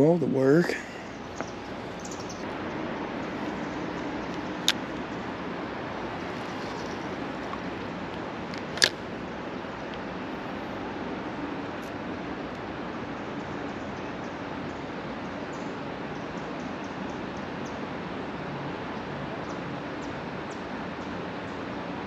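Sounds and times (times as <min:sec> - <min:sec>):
creek water rushing: 0:00.0 - 0:22.0
sharp clicks: 0:08.5 - 0:09.0.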